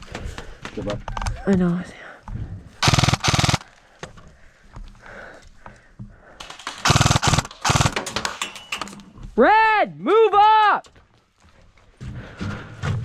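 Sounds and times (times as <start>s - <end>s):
airsoft gun rapid-fire bursts: 2.8s - 3.7s, 6.4s - 8.1s.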